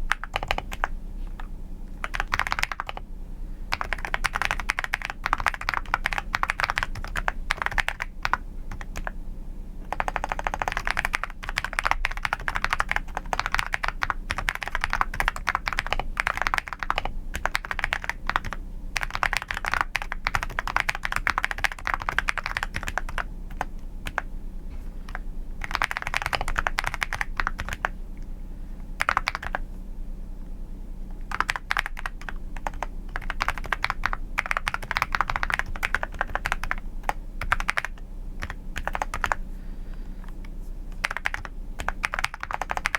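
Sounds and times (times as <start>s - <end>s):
keyboard typing: 0.0s - 3.0s, 3.7s - 9.2s, 9.9s - 24.3s, 25.1s - 28.0s, 29.0s - 29.6s, 31.1s - 39.4s, 40.4s - 42.9s.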